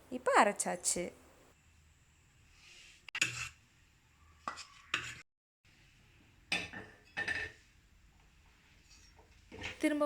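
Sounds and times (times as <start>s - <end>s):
kitchen utensils clinking: 6.5s - 7.6s.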